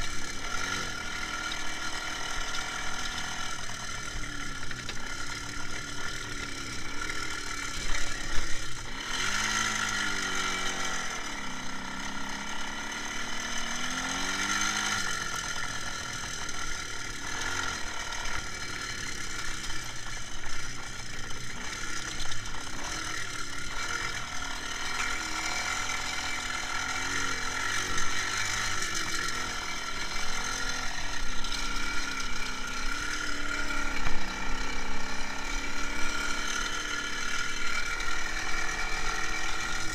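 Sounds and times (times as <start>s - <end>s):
motorcycle engine running: 0.0s - 39.9s
rattly mechanical sound: 0.0s - 39.9s.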